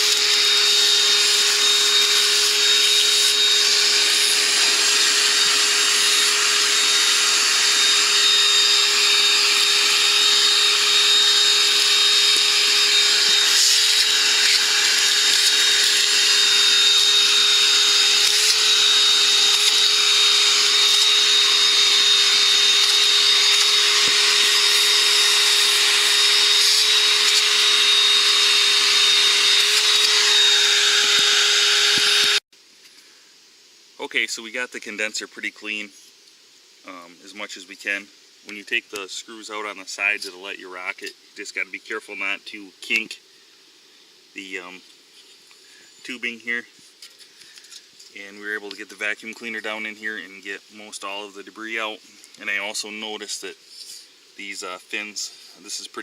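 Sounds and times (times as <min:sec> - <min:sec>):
vacuum cleaner running: 0:00.0 - 0:32.4.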